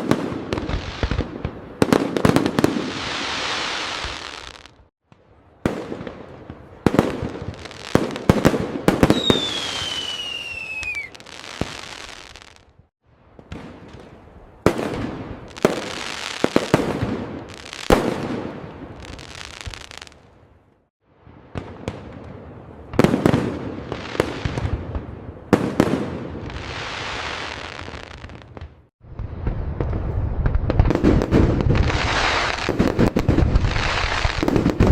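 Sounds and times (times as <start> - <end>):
crackling hiss: 2.4 - 5.3, 7.2 - 12.9, 13.7 - 20.4, 26.4 - 34.9
firework bangs: 5.6 - 12.6, 13.4 - 20.2, 21.4 - 34.9
falling firework whistle: 9.0 - 12.6
firework crackling fizz: 9.0 - 12.7, 29.3 - 34.9.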